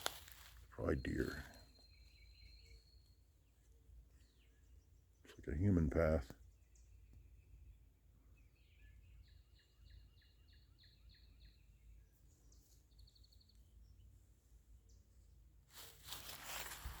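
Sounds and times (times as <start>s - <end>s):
rustling noise: 0.0s - 0.6s, 15.7s - 17.0s
songbird singing: 0.0s - 17.0s.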